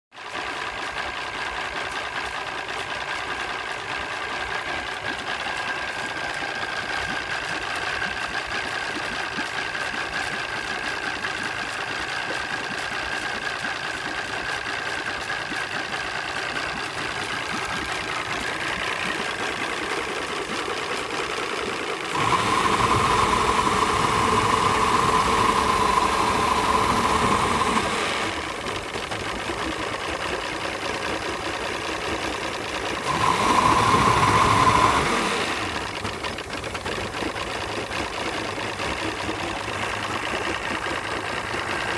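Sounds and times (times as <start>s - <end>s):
outboard motor idling roughly: 0.1s - 41.9s
steady whine: 22.1s - 28.7s.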